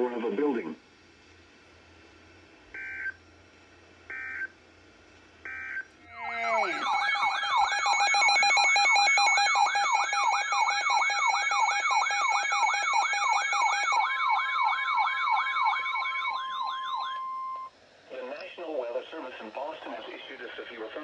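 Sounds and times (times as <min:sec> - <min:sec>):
data tone bursts: 0:06.1 - 0:17.7
warbling alert alarm: 0:06.1 - 0:17.7.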